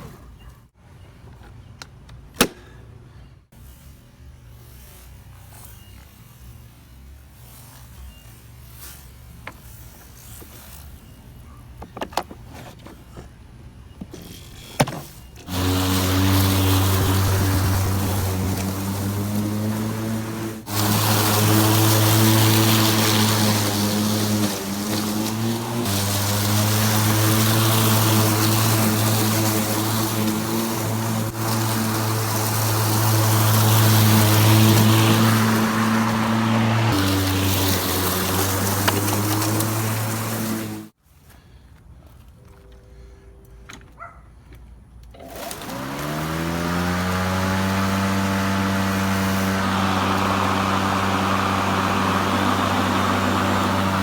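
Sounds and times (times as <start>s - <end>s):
lawn mower motor running: 15.4s - 40.9s, 45.1s - 54.0s.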